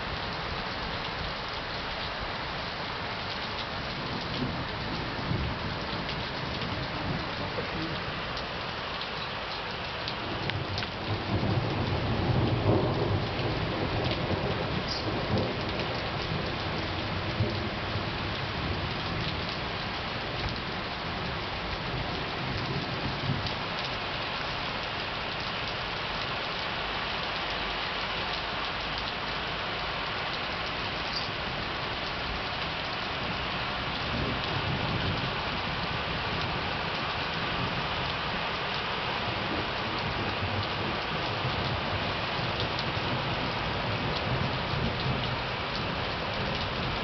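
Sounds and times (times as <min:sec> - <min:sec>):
heavy rain pouring: 0:00.0 - 0:47.0
low thunder rumble: 0:10.3 - 0:19.5.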